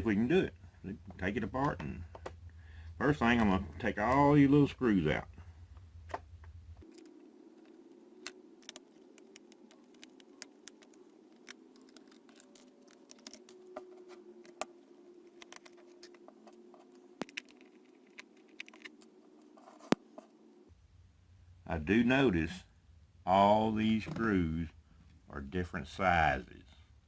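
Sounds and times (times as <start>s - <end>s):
faint steady hum: 0.0s - 27.0s
small screwdriver clicks and scratches: 8.2s - 14.6s, 15.4s - 19.1s.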